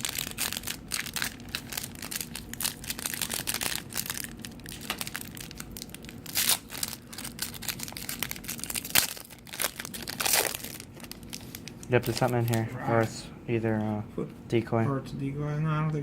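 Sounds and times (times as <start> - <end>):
wrapper crinkling and tearing: 0.0 - 12.8.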